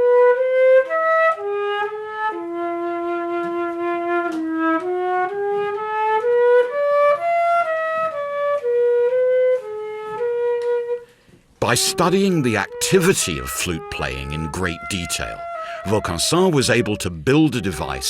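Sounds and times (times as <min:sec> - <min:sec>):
solo flute melody: 0:00.0 - 0:11.0.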